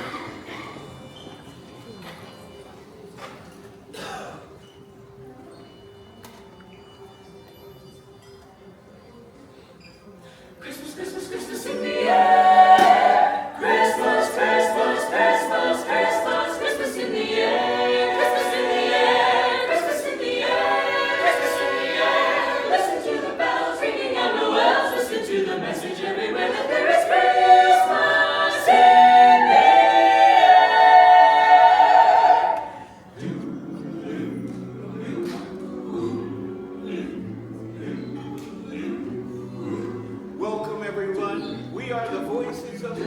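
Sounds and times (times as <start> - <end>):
a cappella ensemble singing: 10.6 - 43.0.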